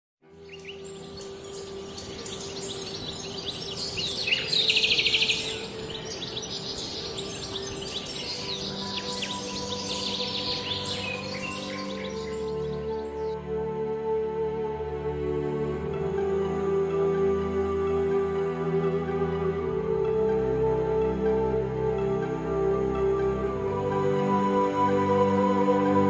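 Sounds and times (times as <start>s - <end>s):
birds chirping: 0.3s - 13.4s
soft background music: 0.3s - 26.0s
rapid bird trill: 0.4s - 13.4s
steady high hiss: 0.4s - 13.4s.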